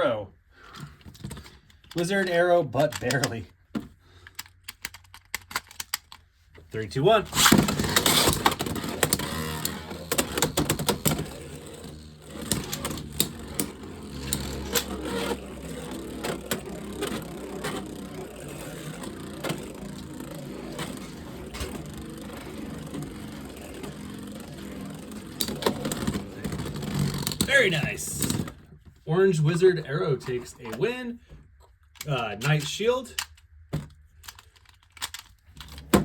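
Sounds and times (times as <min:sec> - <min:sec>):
spinning tops whirring: 0:07.3 - 0:28.3
spinning tops clacking together: 0:07.4 - 0:26.4.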